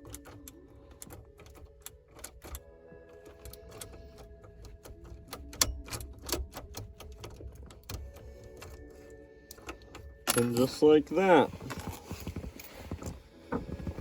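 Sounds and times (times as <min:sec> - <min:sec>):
small metallic clicks and rattles: 0:00.0 - 0:10.9.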